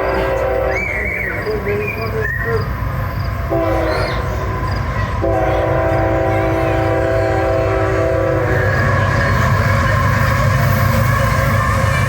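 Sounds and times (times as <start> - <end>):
locomotive air horn blasts: 0.0 - 1.4, 3.5 - 4.3, 5.2 - 9.0
train rumbling: 0.0 - 12.0.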